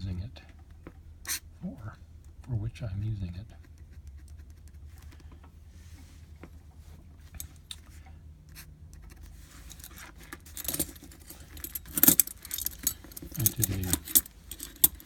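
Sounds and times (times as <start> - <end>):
pen nib scratching on paper: 3.0 - 5.2.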